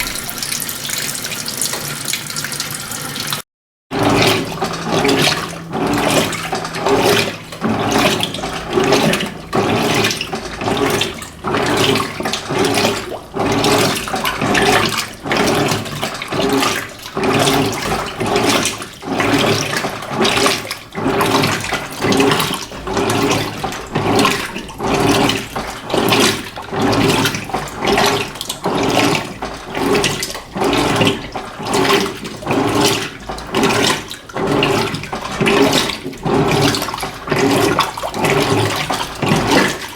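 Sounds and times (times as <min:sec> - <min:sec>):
washing machine water sloshing: 0:00.0 - 0:39.9.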